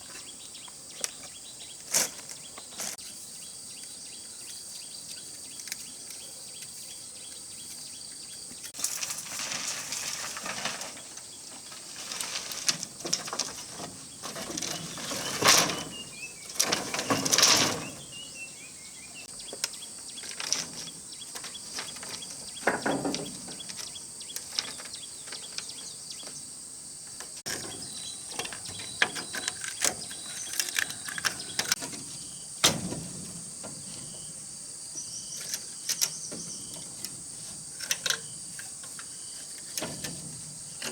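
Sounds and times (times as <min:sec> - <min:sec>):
crickets chirping: 0:00.0 - 0:40.9
loud rustles: 0:08.8 - 0:18.2
bird chirps: 0:14.6 - 0:26.4, 0:27.5 - 0:32.6.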